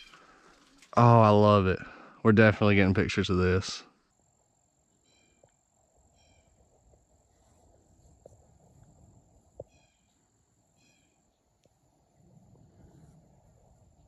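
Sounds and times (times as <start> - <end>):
insect chirps: 4.0 - 7.2, 9.1 - 12.1
insect trill: 4.1 - 6.6.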